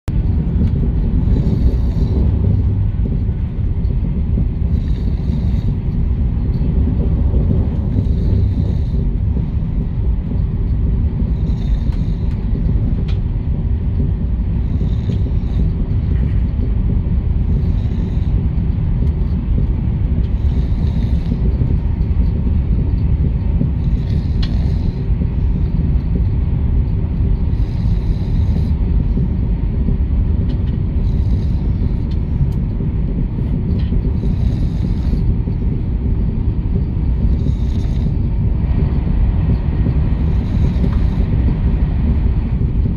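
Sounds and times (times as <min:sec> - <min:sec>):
low rumble of train cabin: 0:00.0 - 0:42.9.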